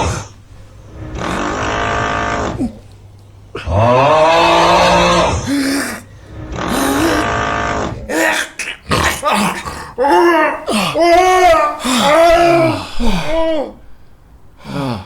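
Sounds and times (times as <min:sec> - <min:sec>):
man snoring loudly: 0:00.9 - 0:02.8, 0:03.6 - 0:08.2.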